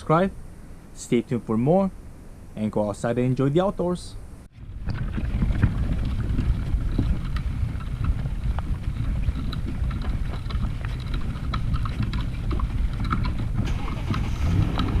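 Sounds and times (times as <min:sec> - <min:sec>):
wind rumbling on microphone: 0:04.2 - 0:15.0
small irregular clicks: 0:04.8 - 0:15.0.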